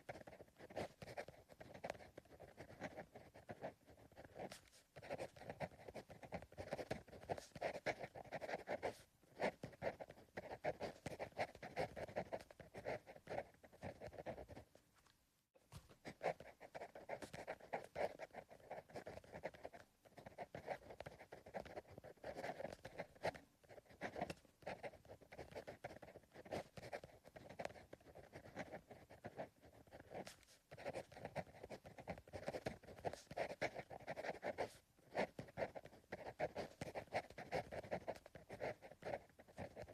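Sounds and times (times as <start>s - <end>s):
pencil writing on paper: 0.0s - 14.8s, 15.8s - 39.9s.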